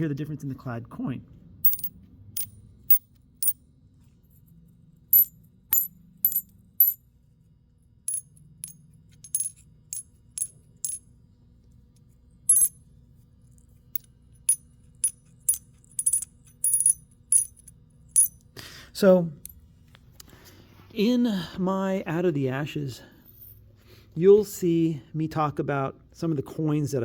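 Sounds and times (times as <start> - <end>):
coins clinking: 1.6 - 3.6, 5.1 - 7.0, 8.1 - 11.0, 12.5 - 12.8, 13.9 - 18.4.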